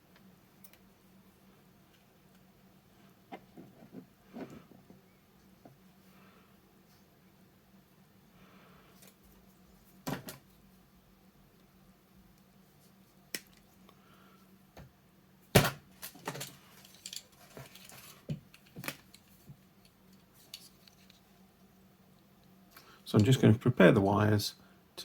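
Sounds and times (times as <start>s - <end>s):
small tools and wires clicking: 16.0s - 21.2s.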